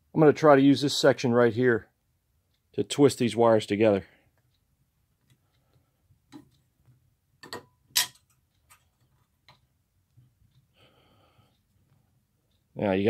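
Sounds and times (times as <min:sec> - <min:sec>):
metal clicks of wire twisting: 0:07.4 - 0:09.6.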